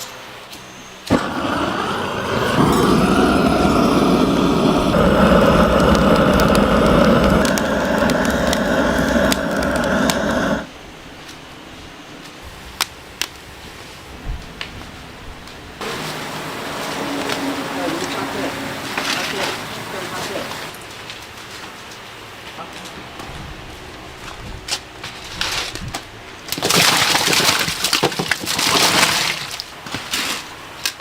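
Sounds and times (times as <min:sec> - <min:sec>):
machine motor running: 0:01.1 - 0:10.7.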